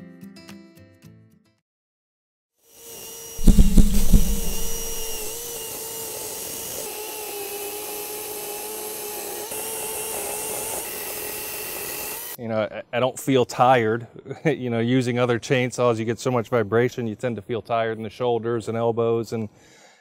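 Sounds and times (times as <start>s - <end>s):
loud knocks: 3.4s - 5.5s.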